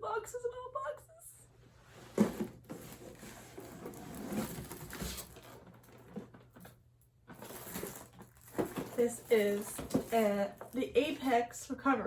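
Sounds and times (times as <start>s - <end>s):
packaging rustling in cardboard box: 2.1s - 6.6s, 7.4s - 10.4s.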